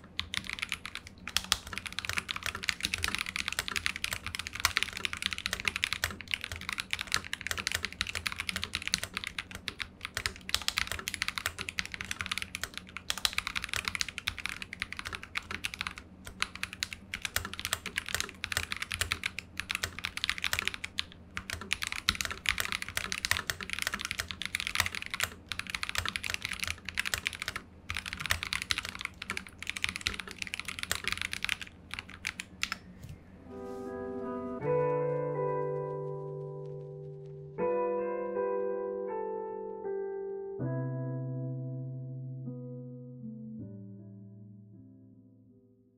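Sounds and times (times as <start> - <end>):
mechanical keyboard typing: 0.0 - 32.8.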